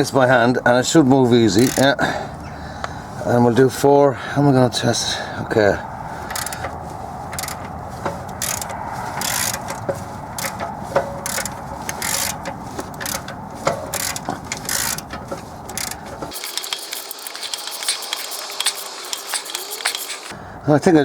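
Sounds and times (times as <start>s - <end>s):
socket ratchet clicking: 6.3s - 20.3s.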